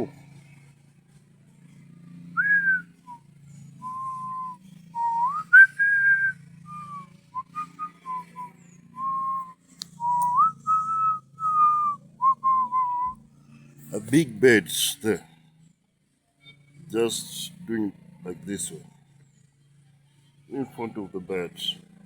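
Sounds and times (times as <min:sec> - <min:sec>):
faint low hum: 0:00.0 - 0:15.8
person whistling a tune: 0:02.4 - 0:03.2, 0:03.8 - 0:13.2.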